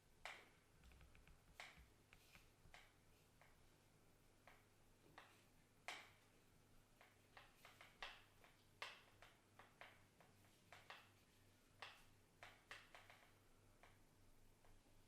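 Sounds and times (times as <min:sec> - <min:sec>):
faint light clicks and taps: 0:00.2 - 0:03.7, 0:04.4 - 0:06.4, 0:07.0 - 0:14.0.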